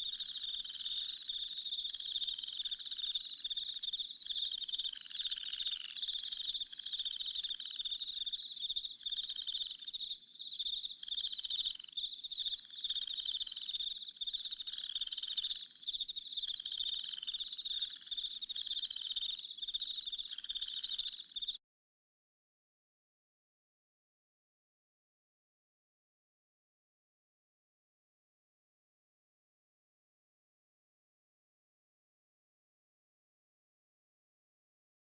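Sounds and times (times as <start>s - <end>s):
frogs and insects trilling: 0.0s - 21.6s.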